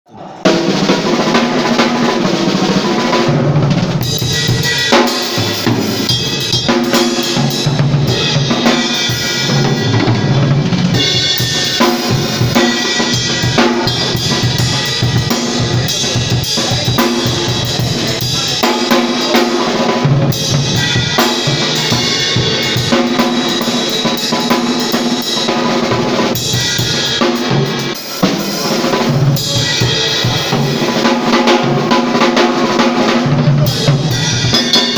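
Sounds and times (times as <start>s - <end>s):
live band playing: 0.4s - 34.9s
bass drum: 3.2s - 23.8s.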